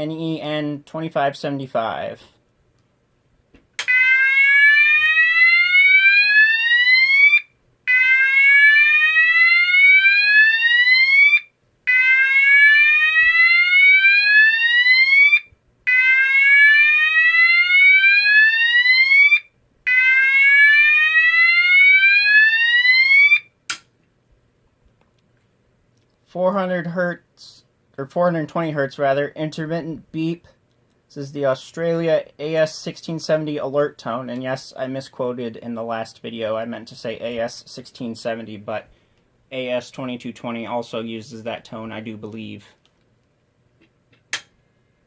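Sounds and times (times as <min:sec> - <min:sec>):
fire alarm whoop tone: 0:03.8 - 0:23.5.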